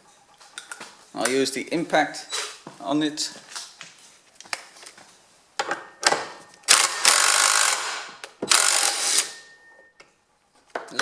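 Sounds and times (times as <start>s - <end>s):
impact wrench hammering: 5.6s - 9.5s.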